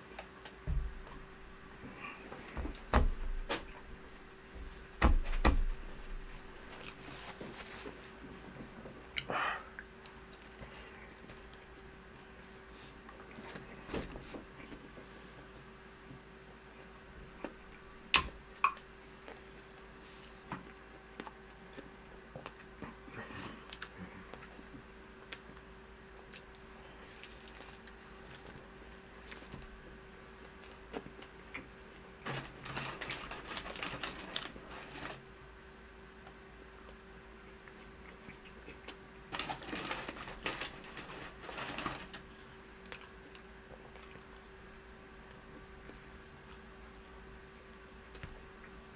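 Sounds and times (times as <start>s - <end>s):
faint steady hum: 0.0s - 48.9s
person chewing a sandwich: 18.8s - 32.2s, 35.9s - 39.8s, 41.6s - 48.9s.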